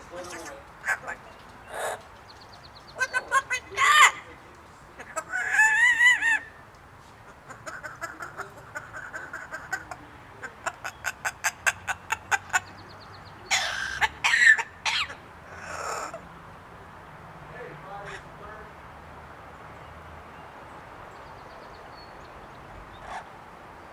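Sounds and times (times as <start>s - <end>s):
parrot wavering call: 13.5s - 16.2s.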